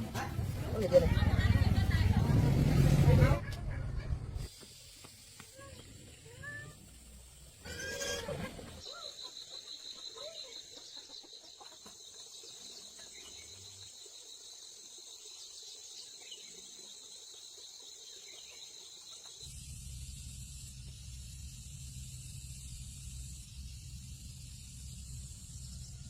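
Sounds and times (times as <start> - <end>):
low rumble with hiss: 0.0 - 4.5, 19.5 - 26.0
insects trilling: 4.8 - 26.0.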